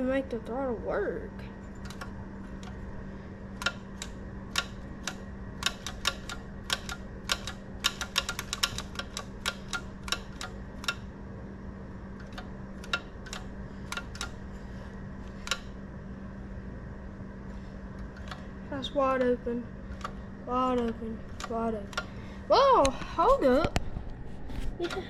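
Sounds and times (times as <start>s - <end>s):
steady low hum: 0.0s - 25.0s
small metal parts clicking: 3.6s - 11.0s.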